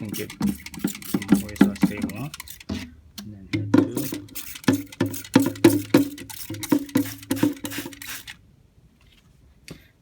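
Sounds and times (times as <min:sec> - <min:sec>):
spray bottle squirts: 0:00.0 - 0:02.8, 0:04.0 - 0:08.4.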